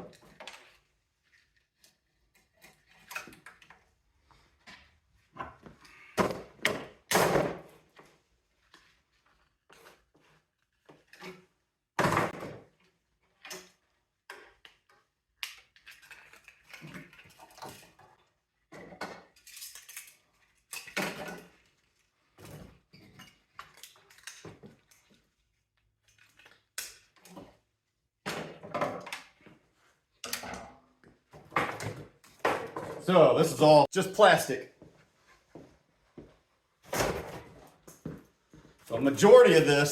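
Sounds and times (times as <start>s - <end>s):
plastic and metal parts clattering: 15.7s - 25.3s.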